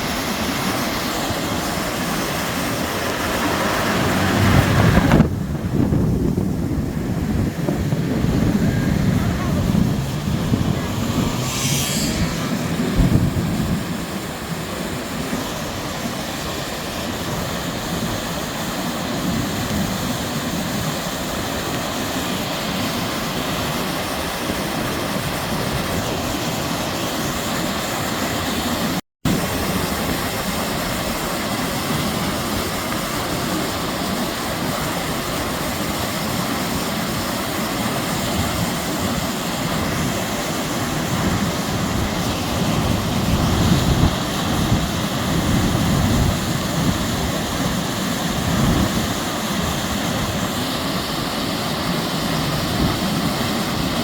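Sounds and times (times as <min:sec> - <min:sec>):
heavy rain roaring: 0:00.0 - 0:14.7.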